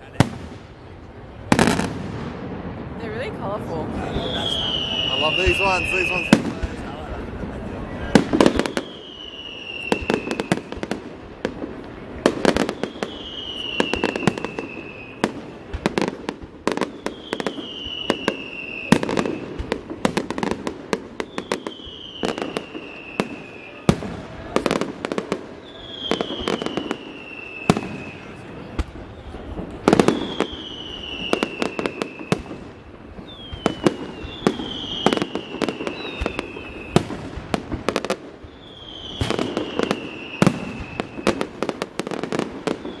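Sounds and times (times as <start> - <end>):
fireworks bangs and crackling: 0.0 - 43.0
high whistle falling in pitch: 4.0 - 6.6, 8.3 - 10.8, 12.6 - 15.4, 16.8 - 19.6, 21.2 - 23.9, 25.6 - 32.5, 33.2 - 37.1, 38.4 - 41.5.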